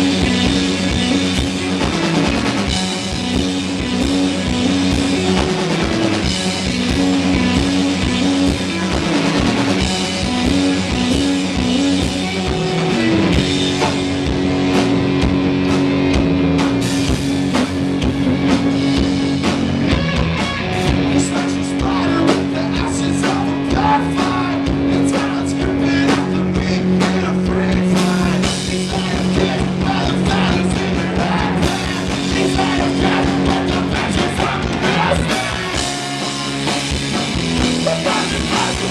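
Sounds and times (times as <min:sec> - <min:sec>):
bass guitar: 0:00.0 - 0:38.9
distorted electric guitar: 0:00.0 - 0:38.9
drum kit: 0:00.0 - 0:38.9
person singing: 0:20.8 - 0:36.7, 0:37.7 - 0:38.9.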